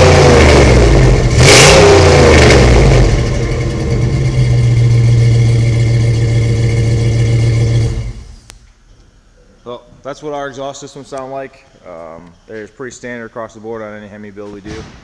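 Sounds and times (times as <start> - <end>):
engine idling: 0.0 - 8.5
vee eight engine revving: 0.0 - 8.5.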